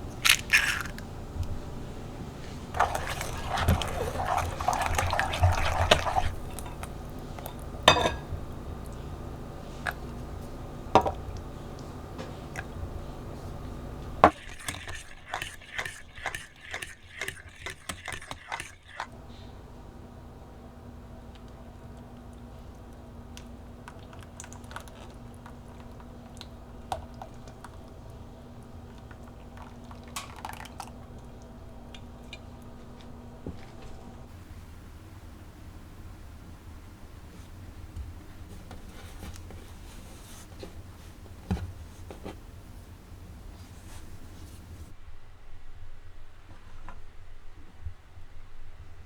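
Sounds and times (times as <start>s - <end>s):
steady low hum: 0.0s - 14.4s, 30.4s - 44.9s.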